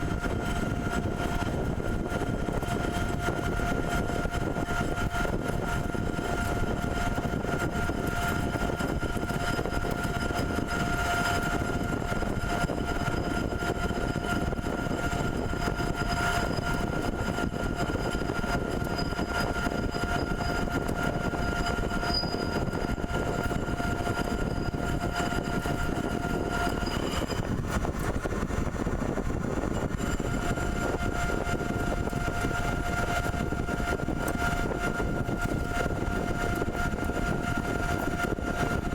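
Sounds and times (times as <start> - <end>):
pipe-threading machine whine: 0.0 - 38.9.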